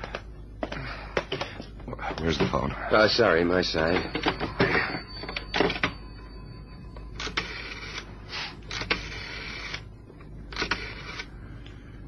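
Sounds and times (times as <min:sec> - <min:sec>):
telephone dial whirring rattles: 0:03.8 - 0:06.0, 0:07.1 - 0:11.3.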